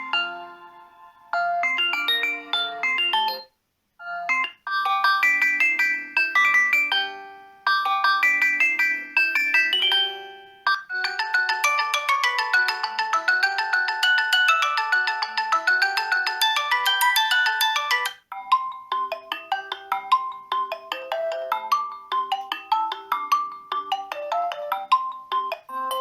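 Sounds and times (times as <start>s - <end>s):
phone ringtone melody: 0.0s - 26.0s.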